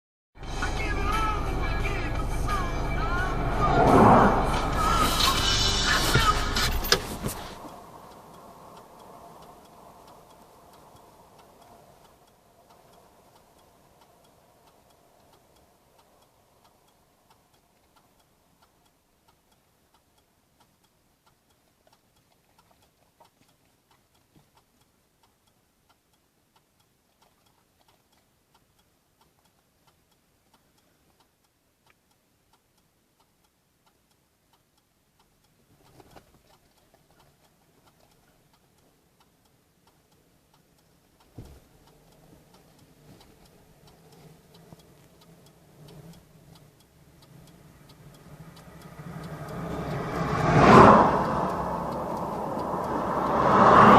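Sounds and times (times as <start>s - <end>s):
music: 0.4s - 7.0s
faint small clicks: 5.2s - 53.9s.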